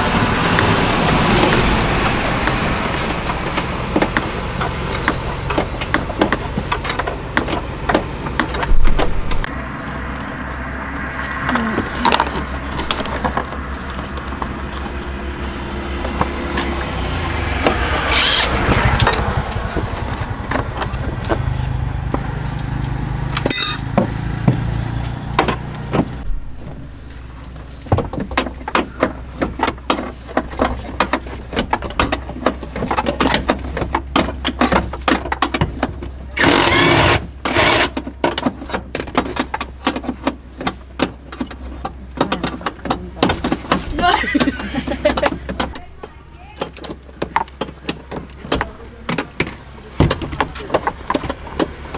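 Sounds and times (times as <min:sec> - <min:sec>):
clatter of clicks and knocks: 0:00.5 - 0:09.5, 0:27.5 - 0:51.9.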